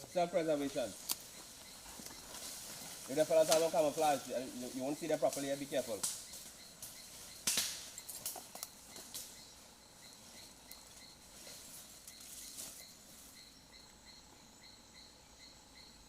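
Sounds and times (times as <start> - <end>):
insect chirping: 0.0 - 16.0.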